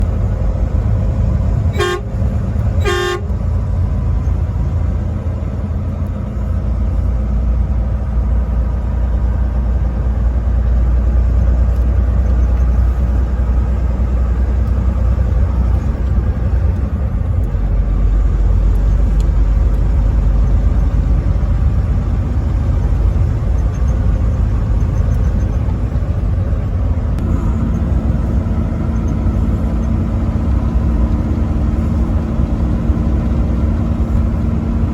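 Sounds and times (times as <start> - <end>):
road noise: 0.0 - 34.9
truck engine rumble: 0.0 - 34.9
truck horn blasts: 1.7 - 3.6.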